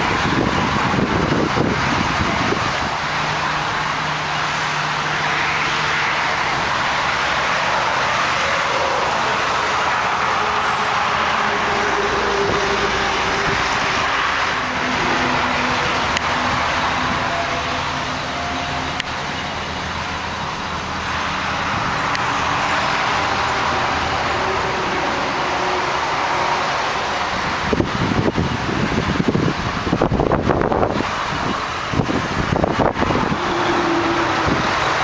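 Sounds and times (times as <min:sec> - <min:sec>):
wind on microphone: 0:00.0 - 0:04.2, 0:21.4 - 0:35.0
highway traffic: 0:00.0 - 0:35.0
vehicles passing: 0:00.0 - 0:35.0.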